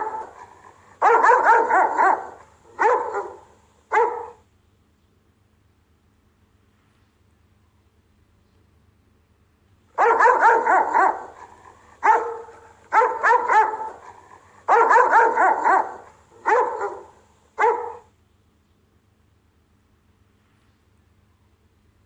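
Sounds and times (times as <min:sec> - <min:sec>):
dog barking: 0:00.0 - 0:04.4, 0:10.0 - 0:18.1.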